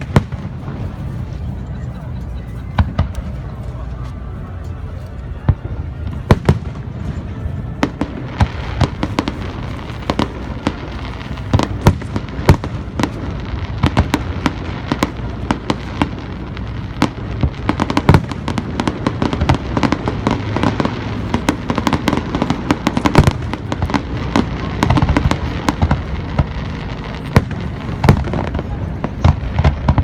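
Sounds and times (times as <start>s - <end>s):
continuous low rumble: 0.0s - 30.0s
fireworks bangs and crackles: 0.0s - 30.0s.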